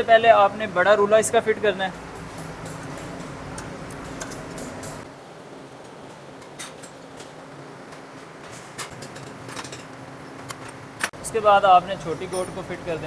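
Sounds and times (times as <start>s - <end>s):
steady low hum: 0.0s - 5.6s, 9.7s - 13.0s
metallic clicks of engine parts: 2.0s - 5.1s.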